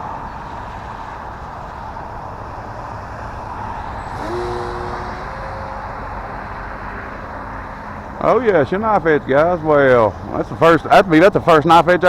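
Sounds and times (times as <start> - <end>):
distant model plane motor: 3.2 - 8.1
rising whine: 3.4 - 8.2.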